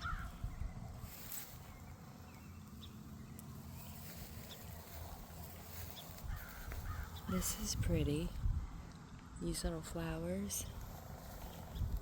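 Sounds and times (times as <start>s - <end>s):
crow cawing: 0.0s - 0.4s, 6.2s - 7.2s
steady low rumble: 0.0s - 12.0s.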